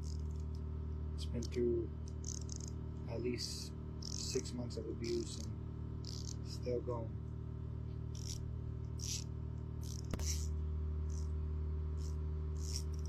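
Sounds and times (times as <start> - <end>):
ratchet rapid clicking: 0.0 - 0.6, 1.2 - 2.8, 4.0 - 6.7, 8.1 - 11.3, 12.0 - 13.0
steady low hum: 0.0 - 13.0.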